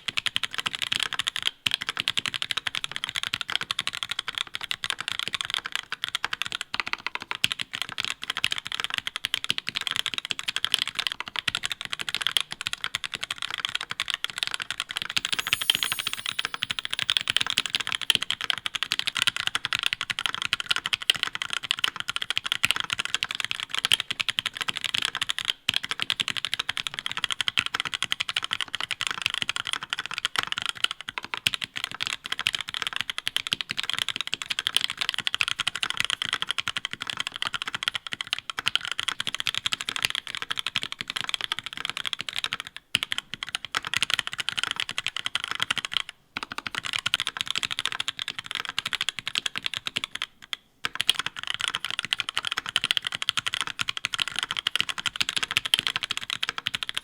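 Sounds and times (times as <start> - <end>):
mechanical keyboard typing: 15.3 - 18.2, 46.6 - 57.0.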